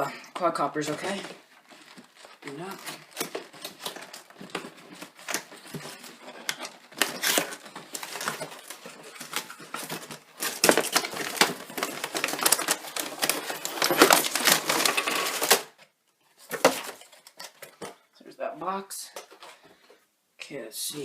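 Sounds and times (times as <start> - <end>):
cardboard box rustling and scraping: 0.9 - 15.7.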